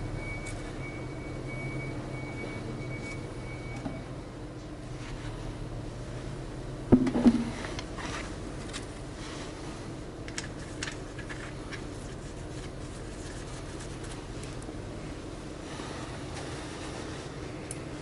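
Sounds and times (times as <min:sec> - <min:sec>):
steady low hum: 0:00.0 - 0:18.0
sharp knocks: 0:06.9 - 0:07.5.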